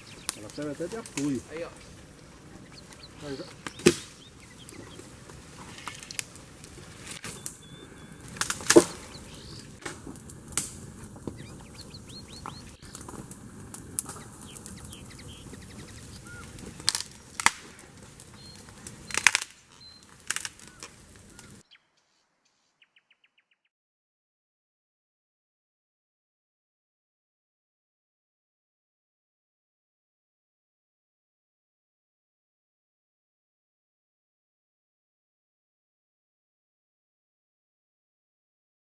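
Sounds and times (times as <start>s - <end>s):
campfire crackling and popping: 0.0s - 21.6s.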